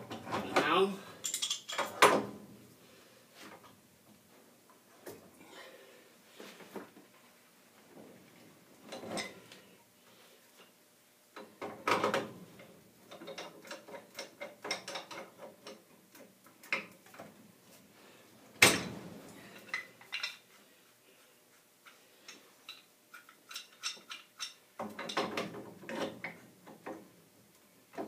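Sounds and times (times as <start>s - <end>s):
wrench clinking and scraping metal: 1.2s - 1.9s, 21.8s - 26.0s.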